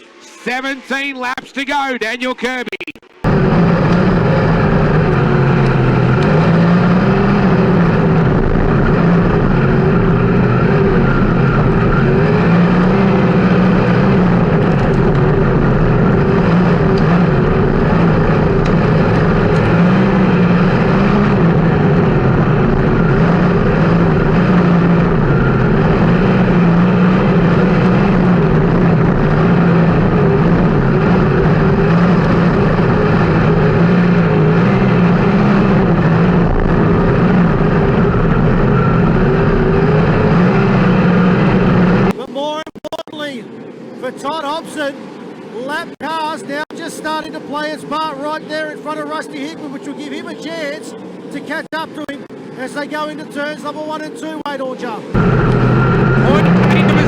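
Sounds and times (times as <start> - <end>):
race car engine running flat out: 3.0 - 42.8, 55.2 - 57.0.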